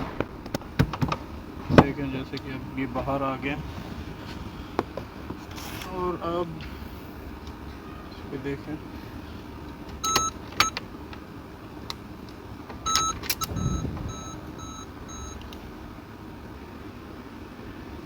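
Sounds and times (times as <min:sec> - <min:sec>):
car warning chime beeping: 0:10.0 - 0:10.8, 0:12.8 - 0:15.6.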